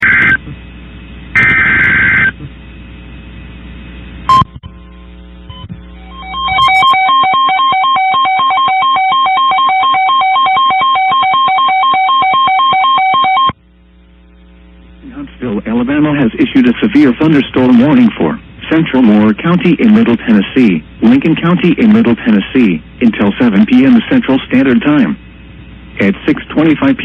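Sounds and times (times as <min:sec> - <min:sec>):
faint low hum: 0:00.0 - 0:27.0
pulsing electronic alert tone: 0:05.5 - 0:13.5.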